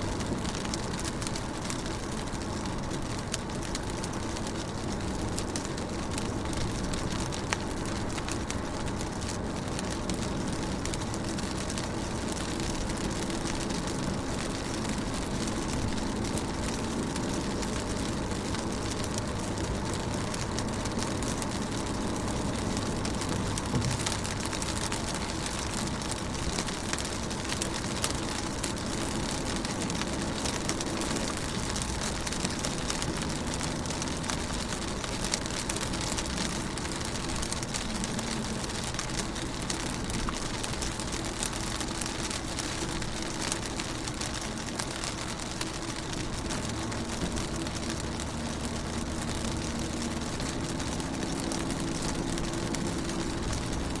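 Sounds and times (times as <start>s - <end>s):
low even rumble: 0.0s - 28.0s
rain on car windows: 0.0s - 54.0s.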